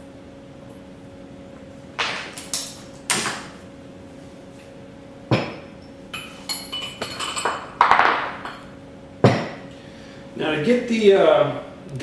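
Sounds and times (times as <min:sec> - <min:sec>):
ringing metal clinks: 0:05.8 - 0:07.6.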